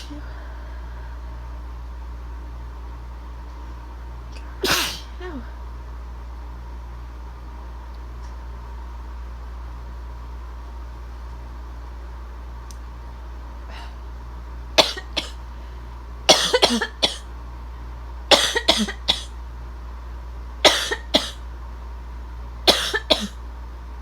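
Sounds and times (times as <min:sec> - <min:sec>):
low background hum: 0:00.0 - 0:24.0
person coughing: 0:04.6 - 0:05.4, 0:14.8 - 0:15.4, 0:16.3 - 0:17.2, 0:18.3 - 0:19.3, 0:20.7 - 0:21.4, 0:22.7 - 0:23.4.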